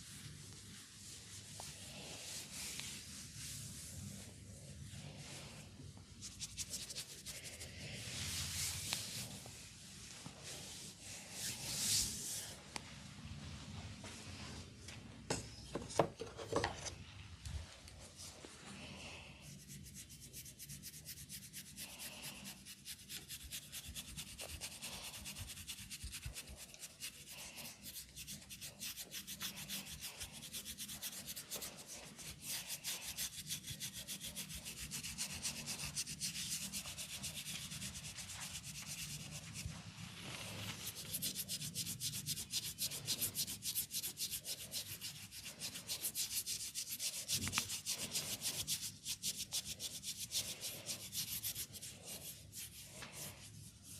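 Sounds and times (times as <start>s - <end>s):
fingers scratching through hair: 6.2s - 7.8s, 19.5s - 53.9s.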